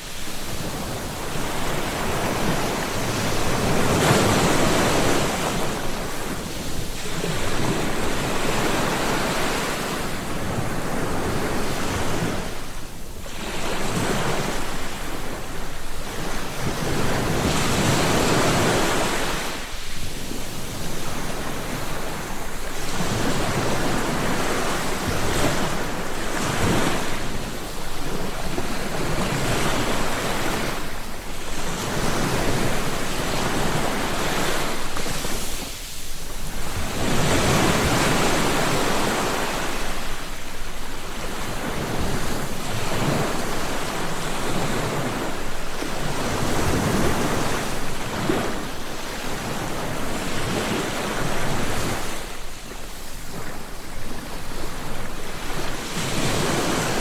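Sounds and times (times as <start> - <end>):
sea waves breaking on shore: 0.0 - 57.0
wind on microphone: 0.0 - 57.0.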